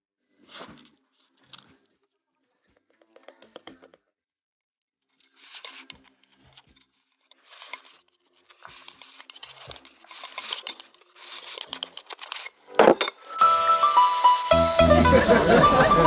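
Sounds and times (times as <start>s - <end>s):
crunchy chewing: 5.2s - 12.6s.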